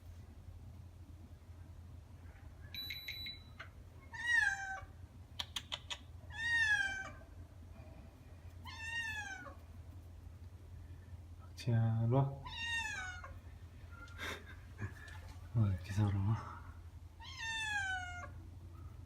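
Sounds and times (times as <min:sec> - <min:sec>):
cat meowing: 0:04.1 - 0:04.9, 0:06.3 - 0:07.2, 0:08.6 - 0:09.6, 0:12.4 - 0:13.4, 0:17.2 - 0:18.4
sharp clicks: 0:05.4 - 0:06.1.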